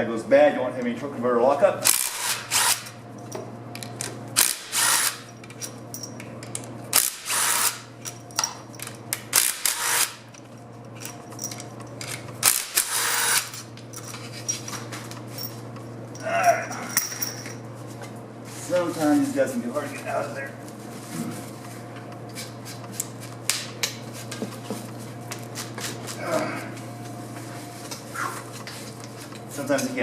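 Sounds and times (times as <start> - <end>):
shop hum: 0.0 - 30.0
power tool spinning out bolts: 1.8 - 3.0, 4.4 - 5.4, 6.9 - 7.9, 9.3 - 10.3, 12.4 - 13.6.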